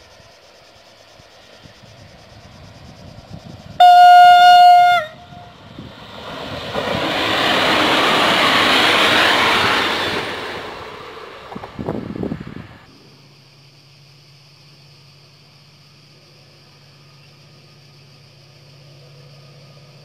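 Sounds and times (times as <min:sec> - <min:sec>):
train passing on rails: 0:00.0 - 0:12.9, 0:16.6 - 0:20.0
train horn blast: 0:03.8 - 0:05.6.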